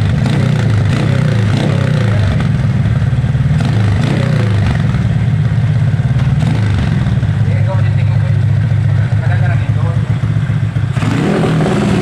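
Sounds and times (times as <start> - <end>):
motorcycle engine idling: 0.0 - 12.0.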